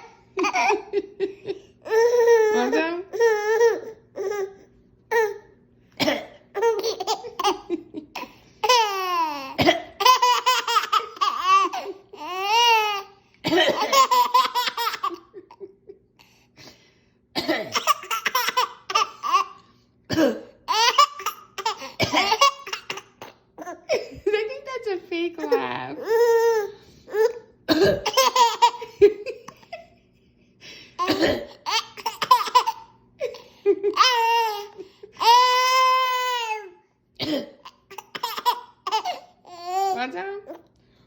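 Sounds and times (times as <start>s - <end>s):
baby laughing: 0.0s - 4.5s, 6.6s - 15.9s, 17.7s - 19.6s, 20.7s - 24.2s, 28.0s - 30.0s, 31.6s - 36.7s, 37.6s - 40.0s.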